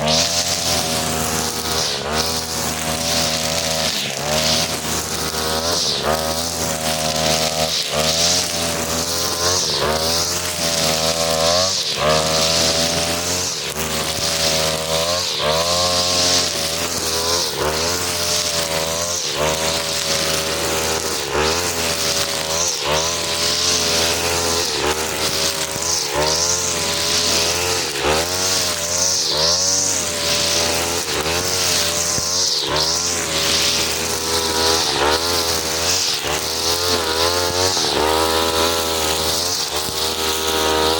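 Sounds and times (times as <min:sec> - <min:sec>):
brush cutter engine revving: 0:00.0 - 0:40.9
trimmer line whirring: 0:00.0 - 0:40.9.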